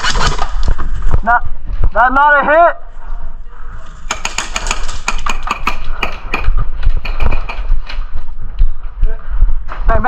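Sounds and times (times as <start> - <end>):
airsoft guns firing: 4.0 - 7.6.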